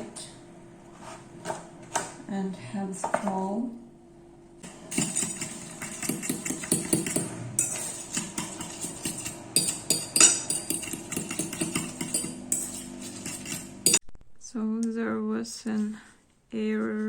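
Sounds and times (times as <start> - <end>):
fork scraping a bowl: 4.6 - 14.0.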